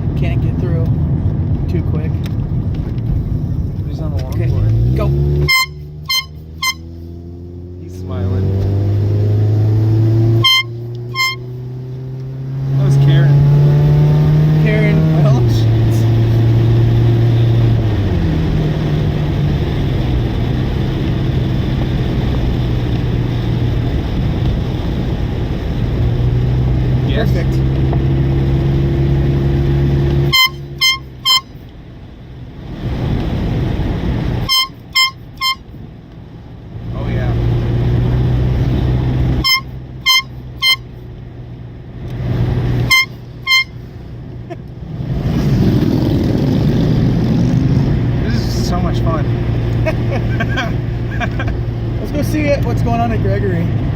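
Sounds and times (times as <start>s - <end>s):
car engine drone: 0.0s - 53.9s
handheld air horn toots: 5.4s - 7.0s, 10.3s - 11.6s, 30.2s - 31.6s, 34.4s - 35.8s, 39.3s - 41.0s, 42.8s - 44.0s.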